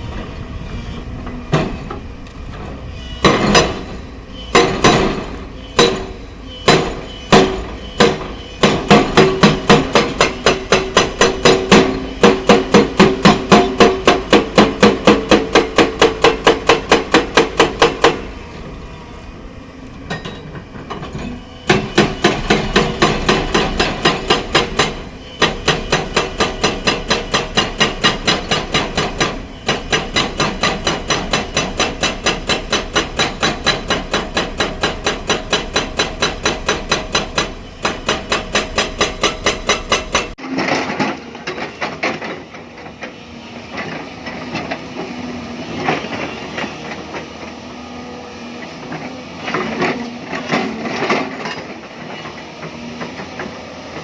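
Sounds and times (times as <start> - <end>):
excavator running: 0.0 - 54.0
hydraulic breaker hammering rock: 3.2 - 18.4, 20.1 - 42.6.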